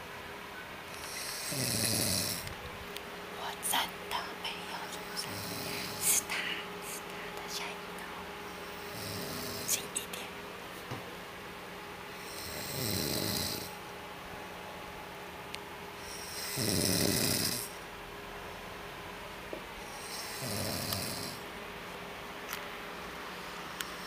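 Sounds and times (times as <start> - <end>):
man snoring: 1.0 - 2.4, 5.2 - 6.2, 8.8 - 9.8, 12.2 - 13.7, 16.0 - 17.8, 19.9 - 21.4.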